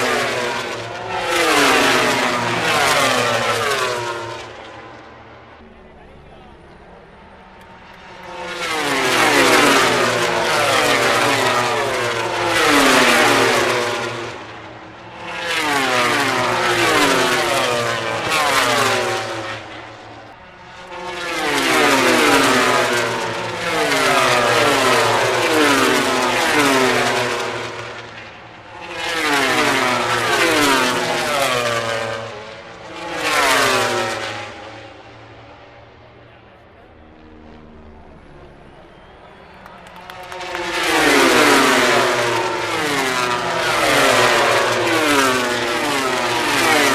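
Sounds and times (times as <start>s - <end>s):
racing motorcycles screaming past: 38.4s - 46.9s.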